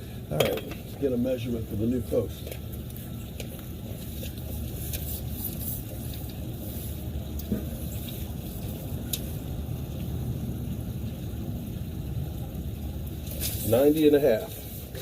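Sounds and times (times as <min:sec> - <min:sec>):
low background rumble: 0:00.0 - 0:15.0
faint clicks and taps: 0:02.4 - 0:05.1.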